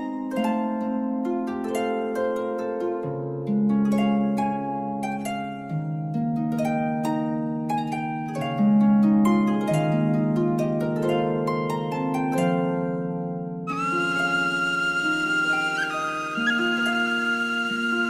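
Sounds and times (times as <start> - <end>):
plucked harp music: 0.0 - 18.0.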